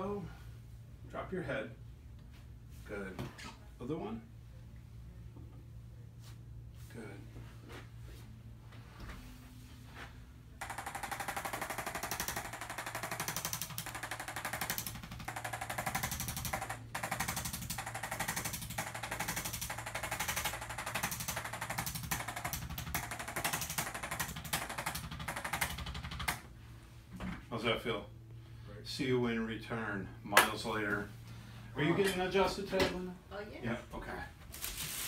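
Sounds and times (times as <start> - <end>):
percussion massager hammering: 10.6 - 26.5.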